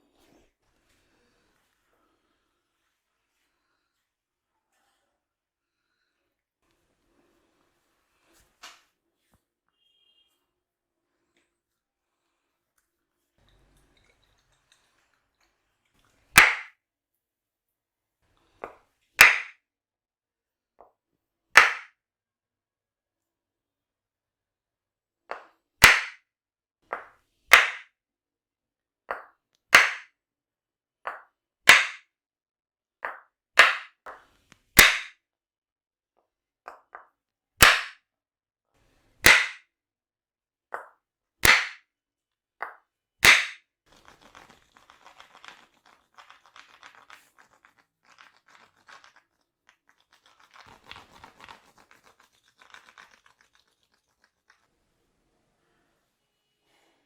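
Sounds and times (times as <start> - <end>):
percussive massage strikes on body: 16.4 - 16.7, 19.2 - 19.6, 21.6 - 21.9, 25.8 - 26.2, 27.5 - 27.9, 31.7 - 32.1, 34.8 - 35.2, 39.2 - 39.6, 41.4 - 41.8, 43.2 - 43.6.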